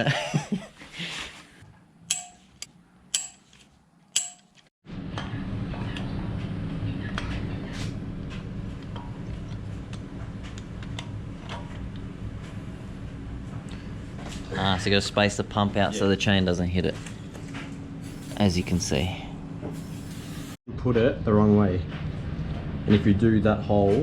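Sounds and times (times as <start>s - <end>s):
metal tool clicks: 2.1s - 4.7s.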